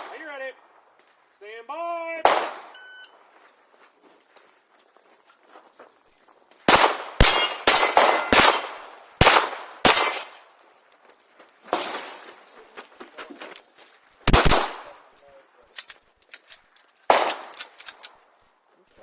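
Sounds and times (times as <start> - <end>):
pistol shots: 0.0 - 0.8, 2.2 - 2.8, 6.7 - 10.5, 14.3 - 15.0, 17.1 - 17.7
metallic clang of steel plates: 7.2 - 8.5, 9.9 - 10.6.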